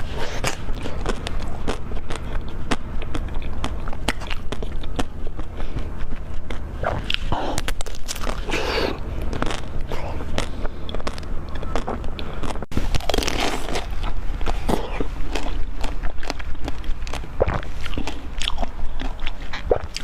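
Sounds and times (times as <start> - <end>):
crunchy bites and chewing: 0.0 - 20.0.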